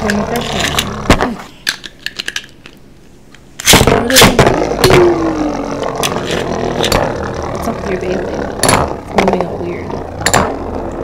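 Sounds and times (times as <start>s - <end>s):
falling whine: 3.7s - 11.0s.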